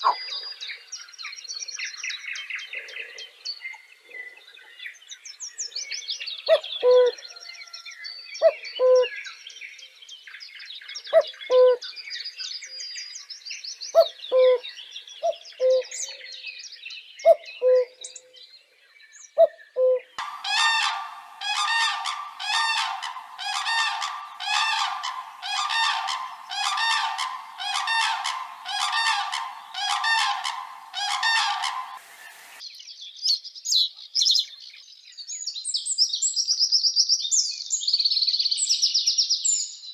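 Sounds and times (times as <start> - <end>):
birds high chirping: 19.3 - 32.6
loud bird call: 20.2 - 32.6.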